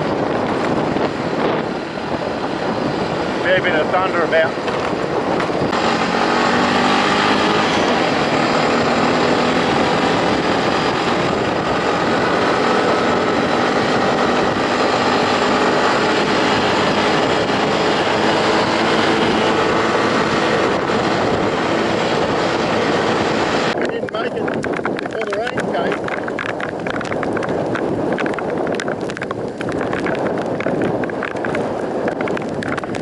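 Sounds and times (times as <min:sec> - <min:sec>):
vehicle engine and road noise: 0:00.0 - 0:33.0.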